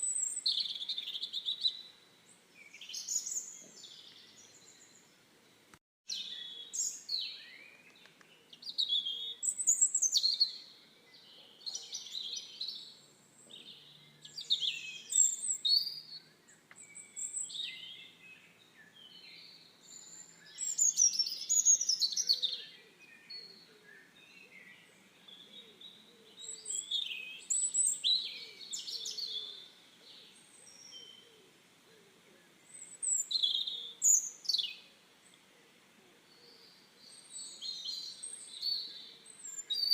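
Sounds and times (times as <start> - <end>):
songbirds chirping and warbling: 0.0 - 39.9.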